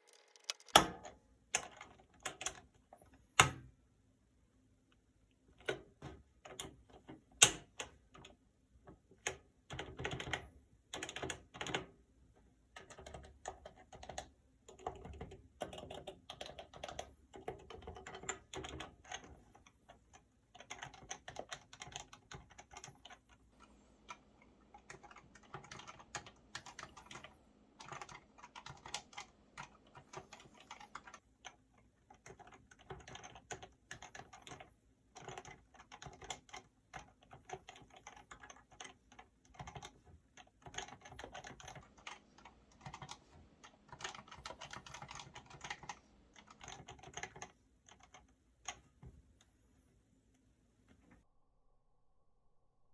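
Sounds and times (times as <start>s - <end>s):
keyboard typing: 0.0s - 3.6s, 9.3s - 11.9s, 12.7s - 48.9s.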